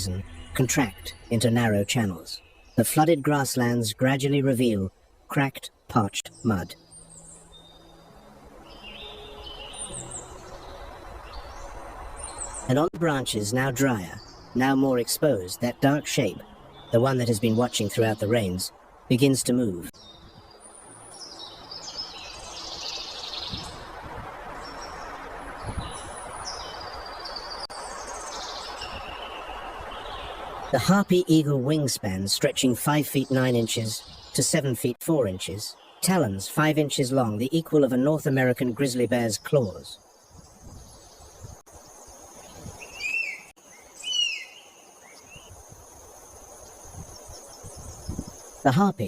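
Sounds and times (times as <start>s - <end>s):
forest ambience hiss: 0.0s - 49.0s
birds chirping and whistling: 6.0s - 23.9s, 24.6s - 31.1s, 42.4s - 45.7s, 46.6s - 49.0s
high insect drone: 6.8s - 17.2s, 40.0s - 48.8s.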